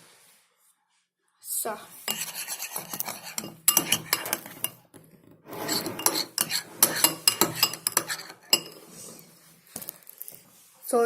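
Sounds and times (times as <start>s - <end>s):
spoon scraping a bowl: 2.0s - 9.4s.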